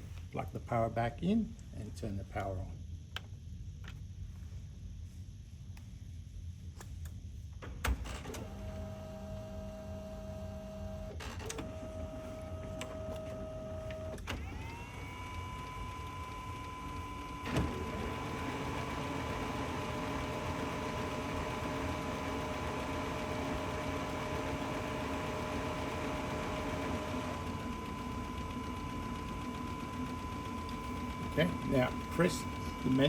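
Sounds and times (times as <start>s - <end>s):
printer motor whine: 8.0s - 33.0s
printer motors running: 8.2s - 33.0s.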